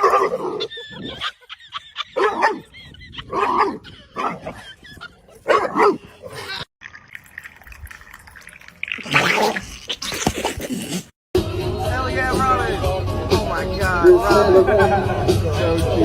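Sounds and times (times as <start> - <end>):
dog barking and yipping: 0.0 - 1.3, 2.0 - 4.7, 5.3 - 6.4.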